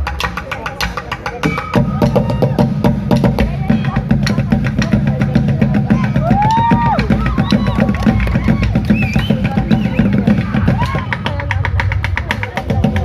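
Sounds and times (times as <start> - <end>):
drum kit beat: 0.0 - 13.0.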